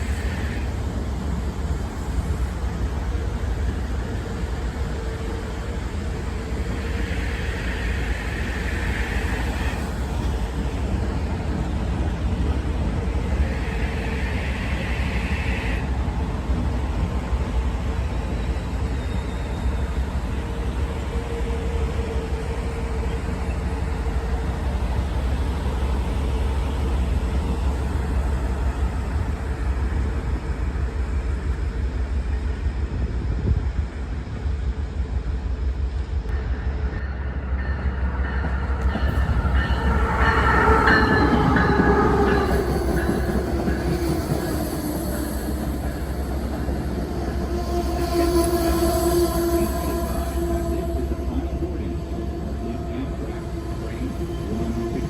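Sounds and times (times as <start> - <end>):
train rumbling by: 0.0 - 55.0.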